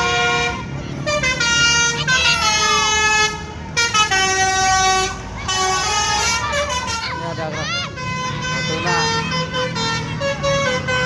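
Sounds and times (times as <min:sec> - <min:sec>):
engine and traffic rumble: 0:00.0 - 0:11.0
multi-tone bus horn melody: 0:00.0 - 0:11.0.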